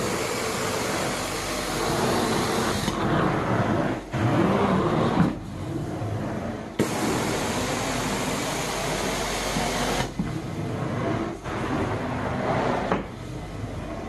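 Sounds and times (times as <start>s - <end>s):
carpet cleaner suction hiss: 0.0s - 3.0s, 6.8s - 10.1s.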